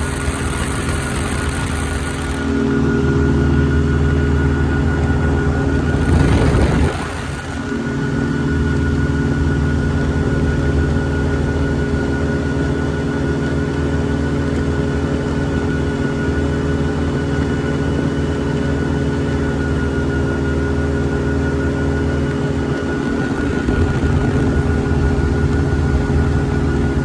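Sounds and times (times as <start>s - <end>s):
ultralight aircraft engine droning: 0.0s - 27.0s.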